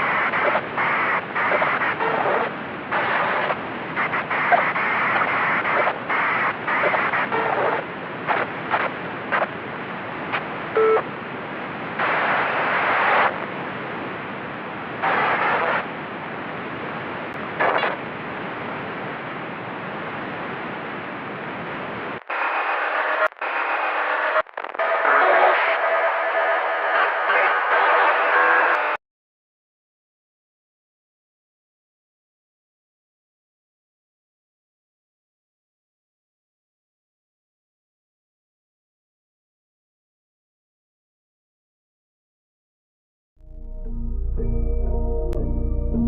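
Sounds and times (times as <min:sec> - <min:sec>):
radio static hiss: 0:00.0 - 0:29.0.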